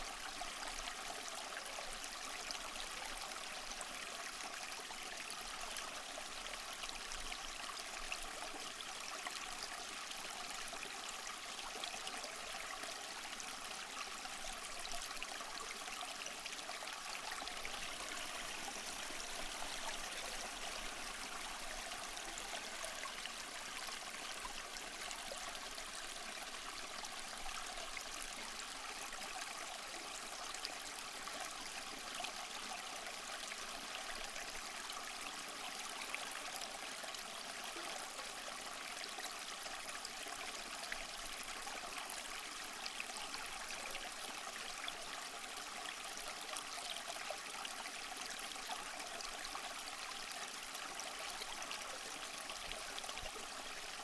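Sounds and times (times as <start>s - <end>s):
small waterfall splashing: 11.1s - 45.4s.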